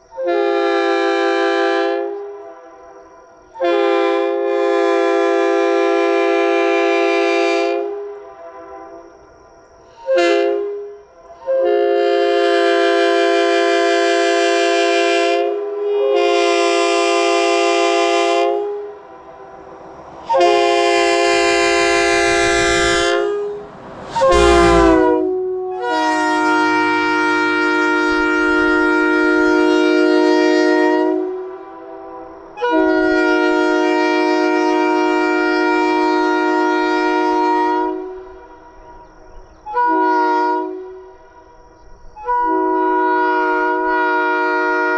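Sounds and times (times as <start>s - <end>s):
locomotive air horn blasts: 0.0s - 41.6s, 42.2s - 44.9s.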